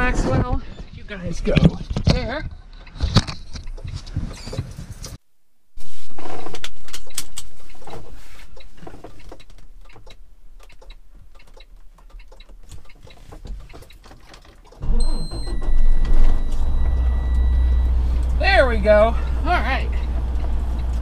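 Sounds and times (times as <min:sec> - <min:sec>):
clicks and rustling in cab: 0:00.3 - 0:05.2, 0:06.4 - 0:17.5
diesel engine starting: 0:14.5 - 0:21.0.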